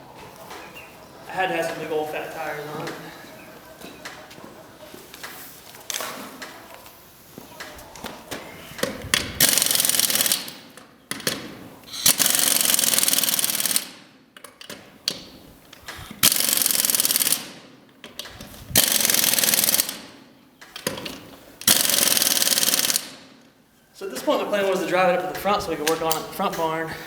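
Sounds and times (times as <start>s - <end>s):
impact wrench rattling: 8.8s - 20.2s, 20.8s - 23.3s.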